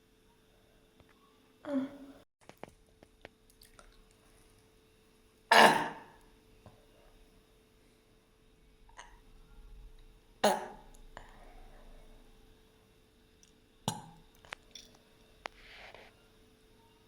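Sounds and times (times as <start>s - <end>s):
woman burping: 1.7s - 2.1s, 5.5s - 6.2s, 10.4s - 10.8s.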